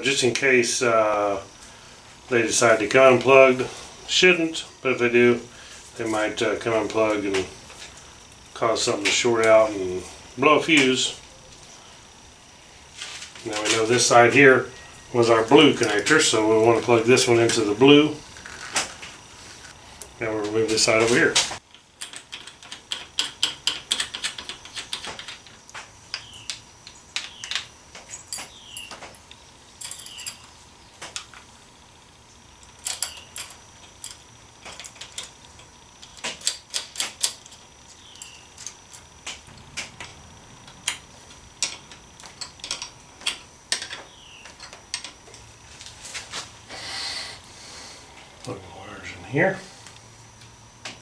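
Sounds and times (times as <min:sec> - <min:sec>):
metal parts clicking and clattering: 0:20.7 - 0:31.5, 0:32.6 - 0:45.4.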